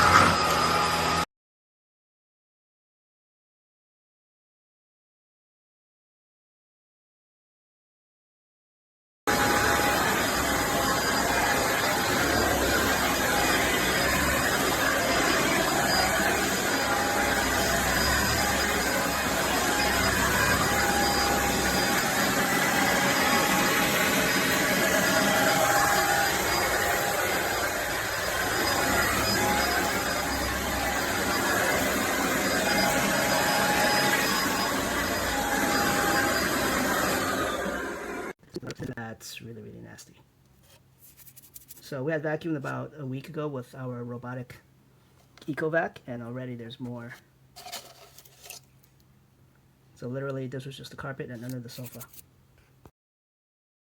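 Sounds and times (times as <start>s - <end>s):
vacuum cleaner running: 0.0s - 1.2s, 9.3s - 38.4s.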